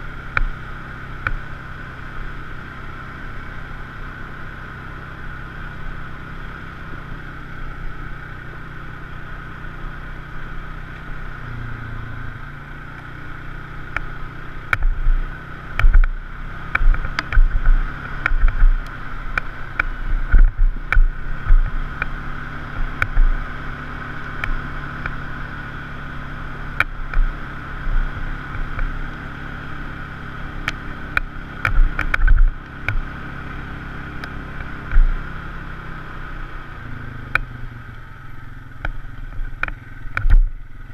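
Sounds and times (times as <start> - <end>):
off-road vehicle engine running: 0.0 - 40.9
sharp knocks and thumps: 15.8 - 22.1.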